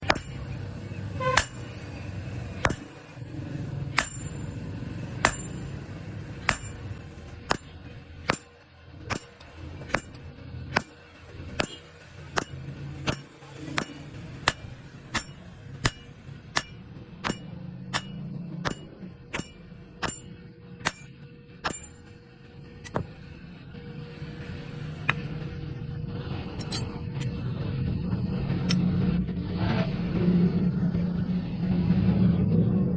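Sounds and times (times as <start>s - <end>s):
hammer striking metal on anvil: 0.0s - 0.6s, 1.2s - 3.1s, 3.8s - 22.2s.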